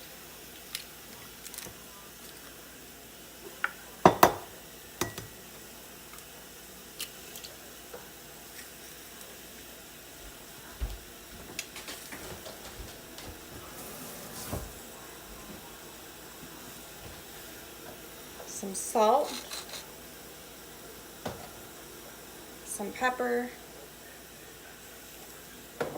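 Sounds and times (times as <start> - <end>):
food sizzling: 0.0 - 25.9.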